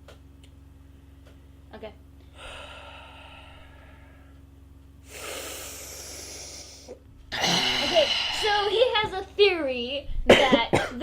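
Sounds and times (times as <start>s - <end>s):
breathy exhales: 2.3s - 4.4s, 5.0s - 8.9s.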